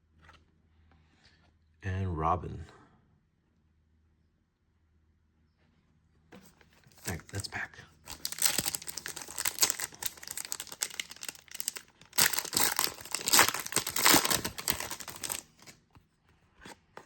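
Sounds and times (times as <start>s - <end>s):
wrapper tearing and crinkling: 8.1s - 15.8s.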